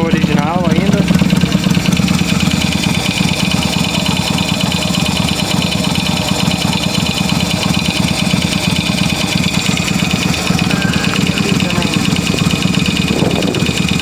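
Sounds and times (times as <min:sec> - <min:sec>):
motorcycle engine idling: 0:00.0 - 0:14.0
rapid even engine ticking: 0:00.0 - 0:14.0.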